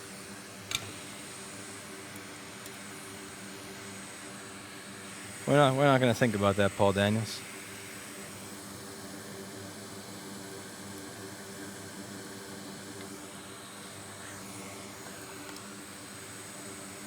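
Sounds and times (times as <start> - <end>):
even hiss: 0.0 - 8.5
low electrical hum: 0.0 - 17.0.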